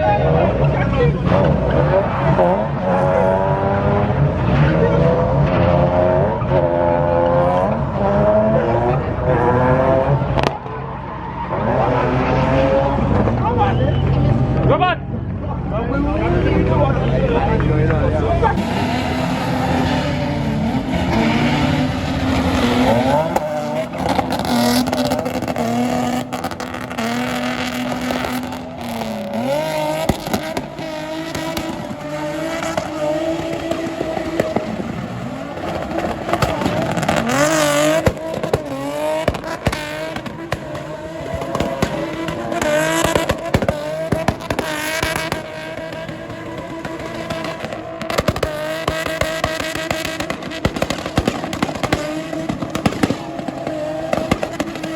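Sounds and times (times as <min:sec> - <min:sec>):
race car engine revving: 0:00.0 - 0:54.9.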